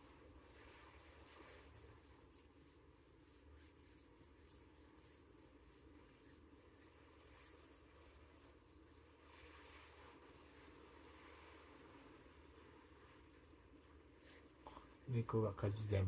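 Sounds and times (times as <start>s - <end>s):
scratchy rustling: 0.0s - 11.6s.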